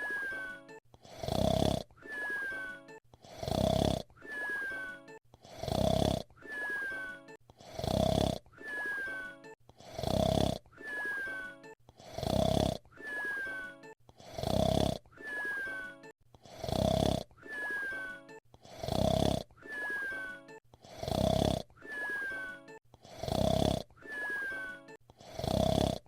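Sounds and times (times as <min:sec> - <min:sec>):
high falling whistle: 0:00.0 - 0:00.7, 0:02.0 - 0:02.8, 0:06.5 - 0:07.2, 0:08.6 - 0:09.4, 0:13.0 - 0:13.8, 0:15.2 - 0:16.0, 0:17.5 - 0:18.3, 0:19.7 - 0:20.4, 0:21.8 - 0:22.7, 0:24.1 - 0:24.8
cartoon snore: 0:00.0 - 0:26.0.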